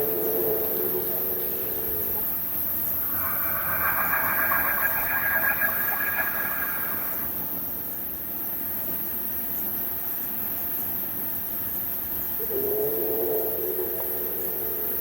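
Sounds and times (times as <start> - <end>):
raspy snore-like sound: 3.0 - 7.6.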